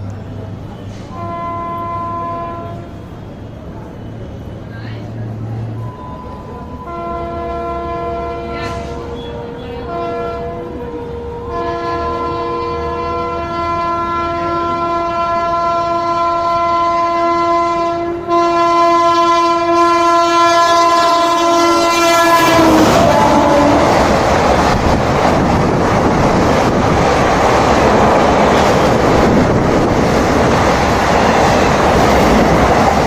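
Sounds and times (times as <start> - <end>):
locomotive horn blasts: 1.1 - 3.1, 5.8 - 24.0.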